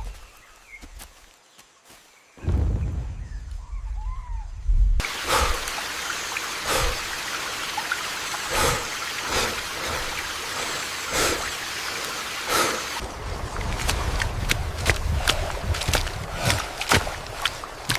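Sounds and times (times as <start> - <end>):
low rumble: 2.4 - 5.0
heavy rain: 5.0 - 17.9
rushing water: 5.0 - 17.9.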